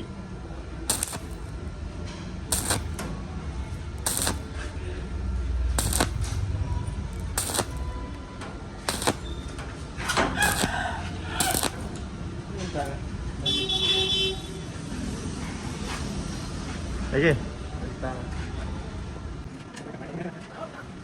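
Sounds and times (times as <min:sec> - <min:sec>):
sharp clicks: 0:00.9 - 0:01.5, 0:02.5 - 0:03.0, 0:04.0 - 0:04.5, 0:05.8 - 0:06.4, 0:07.4 - 0:07.8, 0:08.9 - 0:09.3, 0:10.4 - 0:10.8, 0:11.4 - 0:12.0.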